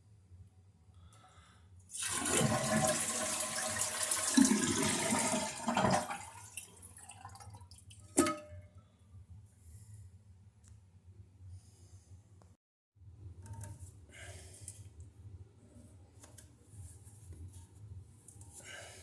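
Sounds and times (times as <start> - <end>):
toilet flushing: 1.9 - 8.4.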